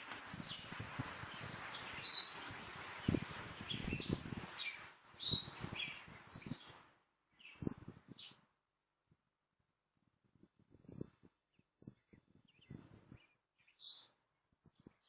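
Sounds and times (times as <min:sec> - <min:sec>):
background hiss: 0:00.0 - 0:08.3
small birds chirping: 0:00.0 - 0:08.4, 0:10.9 - 0:15.0.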